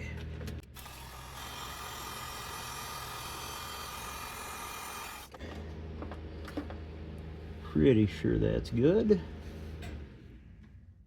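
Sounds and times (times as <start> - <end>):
heat gun airflow hiss: 0.8 - 5.3.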